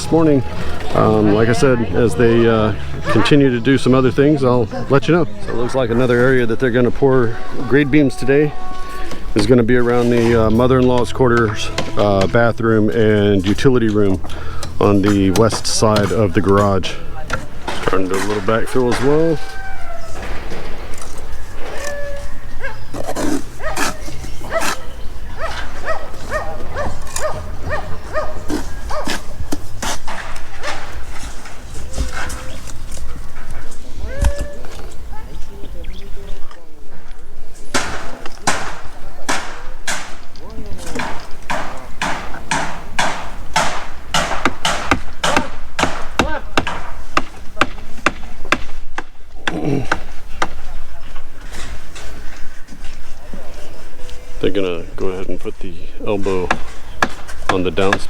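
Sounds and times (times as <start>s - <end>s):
dog barking: 3.0s - 3.4s, 22.6s - 22.9s, 23.6s - 29.4s
hammer blows on wooden formwork: 8.2s - 22.3s, 37.7s - 40.3s, 40.9s - 50.6s, 56.2s - 58.0s
sharp knocks: 41.0s - 50.0s.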